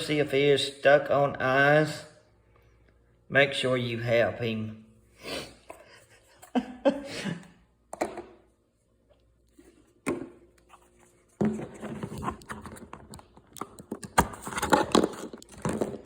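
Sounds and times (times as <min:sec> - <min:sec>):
plastic containers rustling and clattering: 0:09.6 - 0:16.0.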